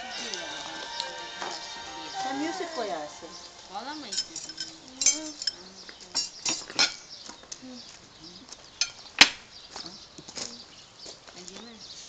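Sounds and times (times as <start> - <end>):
cutlery and dishes clinking: 4.0 - 7.0.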